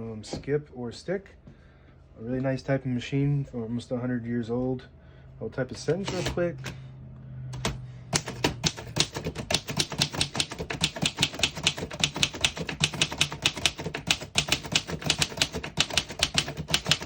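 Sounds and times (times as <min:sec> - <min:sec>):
typewriter typing quickly: 0:06.0 - 0:06.4, 0:07.6 - 0:17.0.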